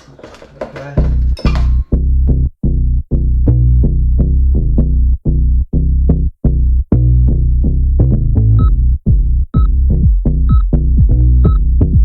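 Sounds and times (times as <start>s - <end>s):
electronic music with drum-machine beat: 8.6s - 12.0s.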